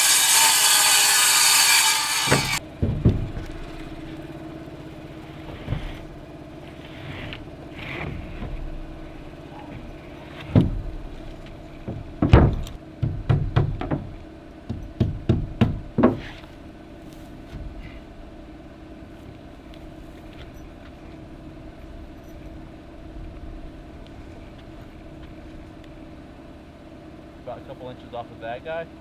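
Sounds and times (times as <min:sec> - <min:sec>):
power saw cutting: 0:00.0 - 0:12.8
knocks on wooden lumber: 0:01.3 - 0:04.1, 0:09.7 - 0:16.4.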